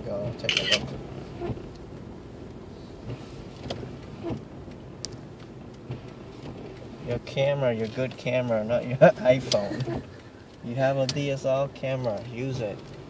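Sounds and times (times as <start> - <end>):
car cabin rumble: 0.0 - 13.0.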